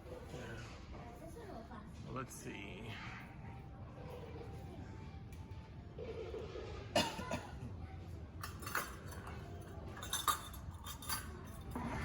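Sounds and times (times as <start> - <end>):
kitchenware clinking: 8.4 - 12.0.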